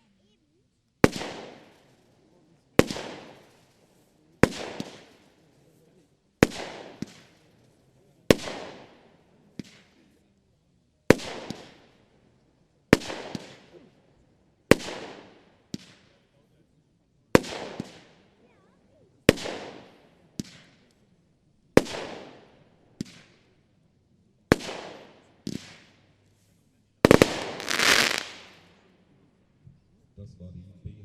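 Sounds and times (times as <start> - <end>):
firework bangs with hiss: 1.0 - 2.0, 2.8 - 5.5, 6.4 - 7.7, 8.3 - 10.1, 11.1 - 12.0, 12.9 - 13.8, 14.7 - 16.1, 17.4 - 18.4, 19.3 - 20.9, 21.8 - 23.5, 24.5 - 26.0, 27.0 - 28.8
small firework pops: 1.0 - 2.1, 2.8 - 5.6, 6.4 - 10.2, 11.1 - 12.0, 12.9 - 13.9, 14.7 - 16.3, 17.4 - 18.5, 19.2 - 21.1, 21.8 - 23.6, 24.5 - 26.4, 27.0 - 28.9.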